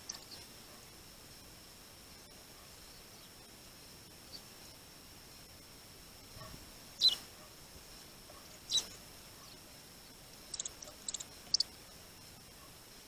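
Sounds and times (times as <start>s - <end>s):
small birds calling: 0.0s - 0.5s, 6.4s - 7.6s, 8.2s - 11.8s.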